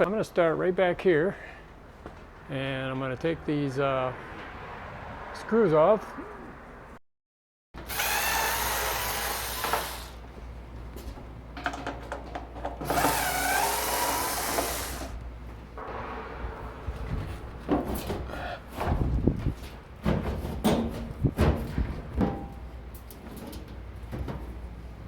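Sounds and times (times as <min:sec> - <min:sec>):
handling clicks and knocks: 0:11.0 - 0:12.9
cordless driver motor whine: 0:12.8 - 0:15.1.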